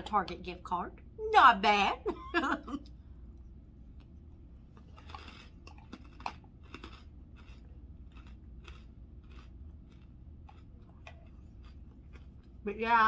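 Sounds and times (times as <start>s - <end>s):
low steady hum: 0.0s - 13.0s
crunchy chewing: 3.9s - 12.7s.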